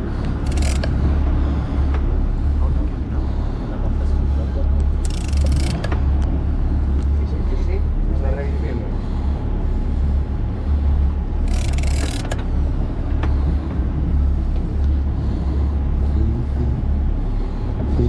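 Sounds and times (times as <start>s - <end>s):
boat engine rumbling: 0.0s - 18.0s.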